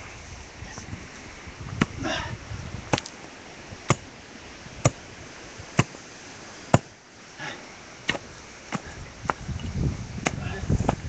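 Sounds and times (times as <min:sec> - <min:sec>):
digging tool striking rocky ground: 0:02.9 - 0:03.2, 0:03.9 - 0:04.1, 0:04.8 - 0:05.0, 0:05.7 - 0:06.0, 0:06.7 - 0:07.0, 0:08.0 - 0:09.4.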